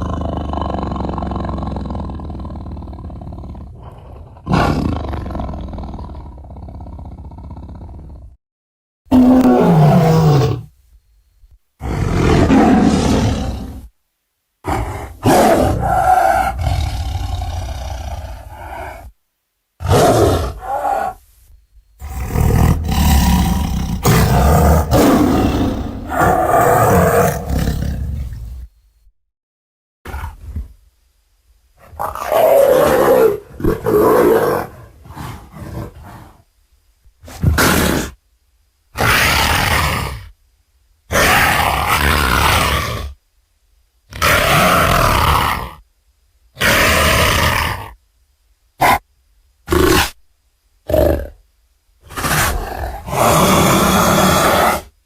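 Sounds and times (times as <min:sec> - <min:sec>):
dinosaur roars: 0:00.0 - 0:08.4, 0:09.1 - 0:10.7, 0:11.8 - 0:13.9, 0:14.6 - 0:19.1, 0:22.0 - 0:28.6, 0:32.0 - 0:36.4, 0:52.1 - 0:54.9
growls: 0:00.0 - 0:08.4, 0:09.1 - 0:10.7, 0:11.8 - 0:13.9, 0:14.6 - 0:19.2, 0:19.8 - 0:21.2, 0:22.0 - 0:28.7, 0:31.8 - 0:36.5, 0:37.2 - 0:38.2, 0:39.0 - 0:40.4, 0:41.1 - 0:43.2, 0:44.1 - 0:45.8, 0:46.6 - 0:48.0, 0:49.7 - 0:50.2, 0:50.8 - 0:51.4, 0:52.0 - 0:55.0.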